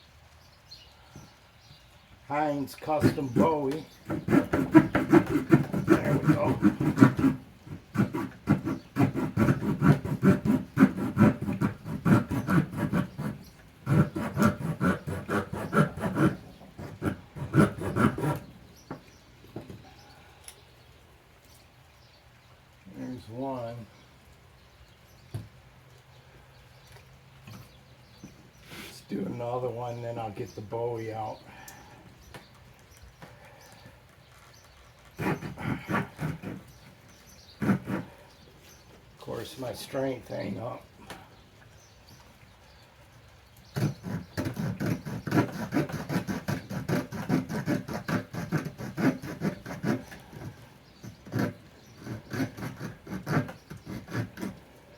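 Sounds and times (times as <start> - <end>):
saw cutting through hardwood: 2.6 - 18.5, 35.1 - 38.8, 43.7 - 54.7.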